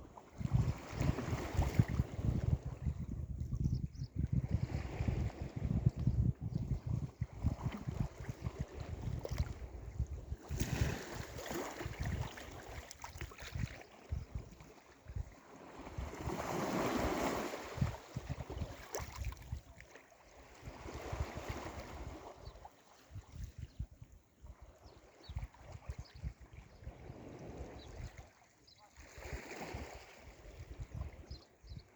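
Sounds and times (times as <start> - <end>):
wind buffeting microphone: 0.3 - 19.7.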